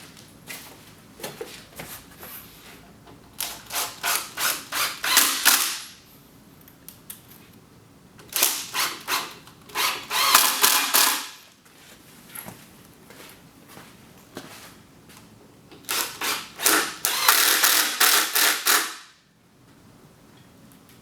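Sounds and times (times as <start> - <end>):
power screwdriver driving screws: 3.4 - 5.8, 8.4 - 11.4, 15.9 - 19.0.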